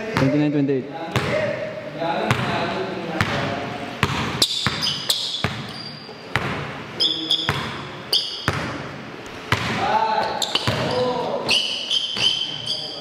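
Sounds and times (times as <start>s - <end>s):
basketball bouncing on a court: 1.1s - 1.4s, 2.3s - 2.6s, 3.2s - 6.7s, 7.5s - 8.9s, 9.5s - 11.1s
sneakers squeaking on the floor: 3.2s - 13.0s.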